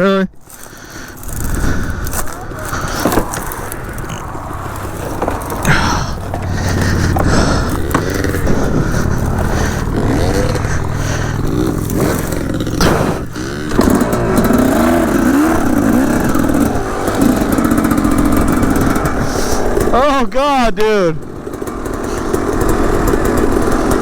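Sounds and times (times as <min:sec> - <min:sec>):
dirt bike engine revving: 0:00.0 - 0:24.0.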